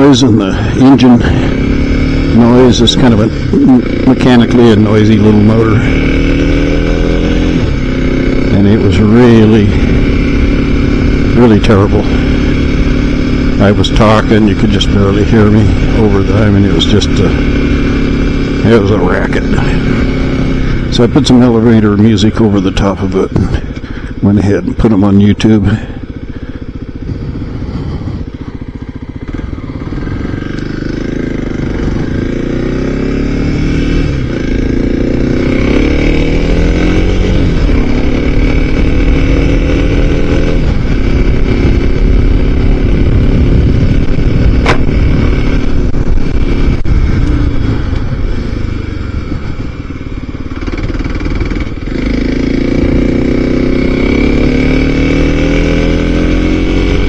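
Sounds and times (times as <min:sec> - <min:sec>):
small motorcycle engine revving: 0:00.0 - 0:57.0
sharp click: 0:44.6 - 0:44.9.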